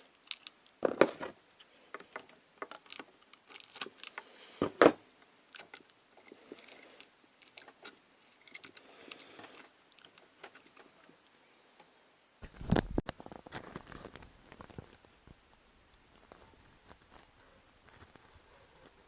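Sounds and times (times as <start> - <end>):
handling noises: 0.0 - 11.3.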